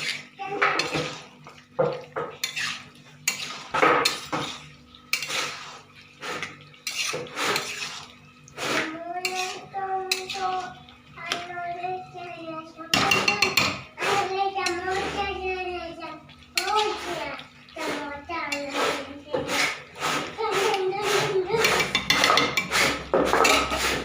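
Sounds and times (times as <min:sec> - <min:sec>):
spoon scraping a wok: 0:00.0 - 0:01.3, 0:02.2 - 0:10.7, 0:17.8 - 0:24.0.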